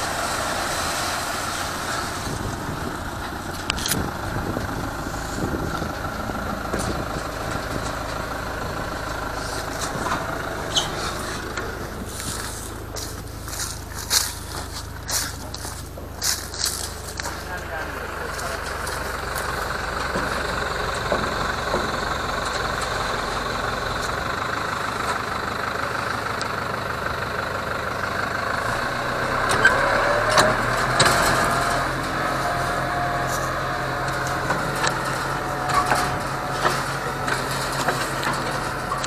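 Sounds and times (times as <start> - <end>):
harvesting machine drone: 0.0 - 39.0.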